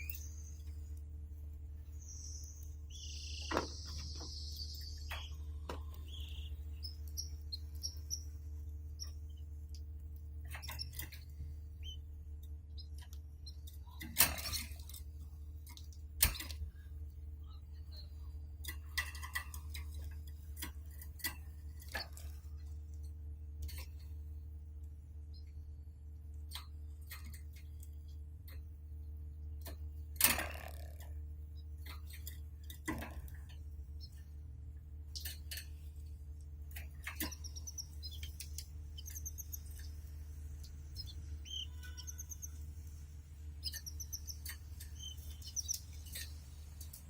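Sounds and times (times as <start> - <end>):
canary chirping: 0.0 - 0.9, 1.8 - 9.6, 11.8 - 12.1, 35.1 - 35.6, 36.9 - 47.0
steady low hum: 0.0 - 47.0.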